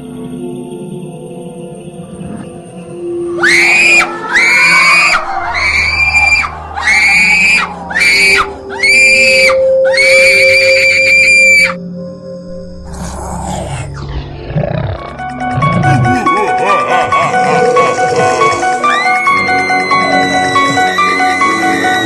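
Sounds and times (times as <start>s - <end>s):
shrill high-pitched screams: 3.4s - 11.8s, 18.8s - 22.0s.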